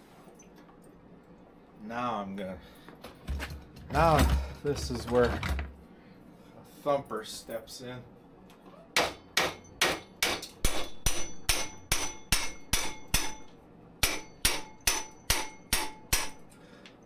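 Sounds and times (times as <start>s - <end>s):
hammer striking metal: 9.0s - 16.5s.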